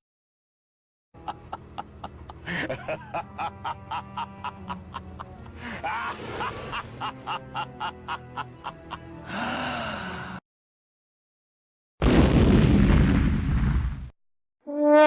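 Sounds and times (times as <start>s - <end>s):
squawking sliding sounds: 5.8s - 7.1s.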